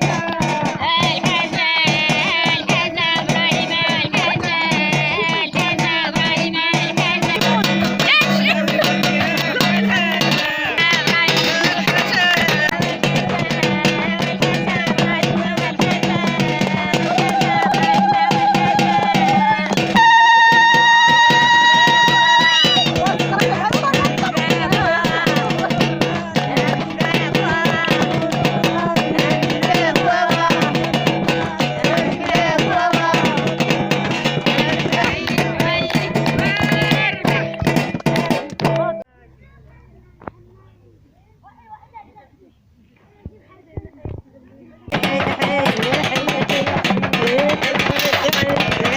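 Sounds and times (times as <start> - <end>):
lively dance music: 0.0 - 39.1, 44.9 - 48.9
upbeat dance music with singing: 44.9 - 48.9.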